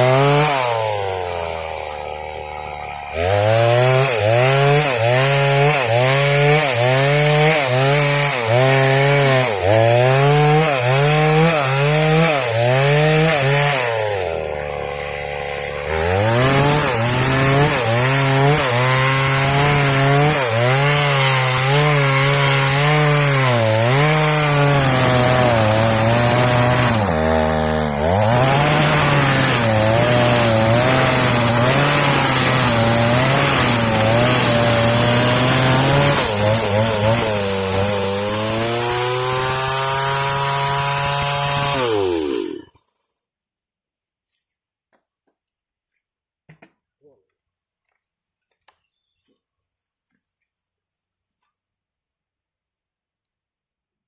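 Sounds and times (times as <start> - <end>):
chainsaw cutting wood: 0.0 - 43.1.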